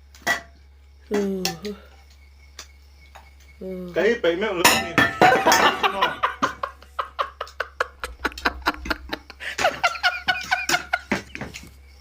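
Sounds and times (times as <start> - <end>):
person laughing: 5.3 - 11.4.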